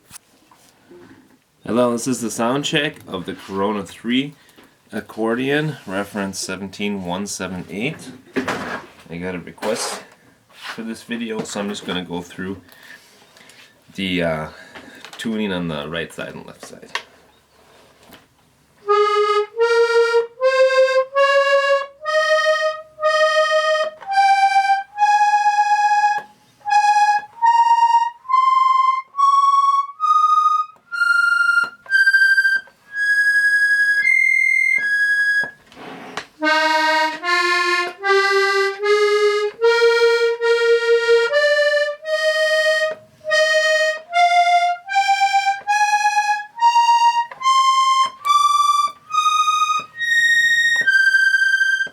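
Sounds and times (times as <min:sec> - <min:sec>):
accordion single notes: 0:18.8 - 0:51.9.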